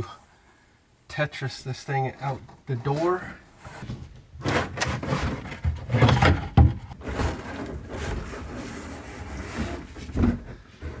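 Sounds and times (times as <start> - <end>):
panel rustling and scraping: 3.6 - 11.0.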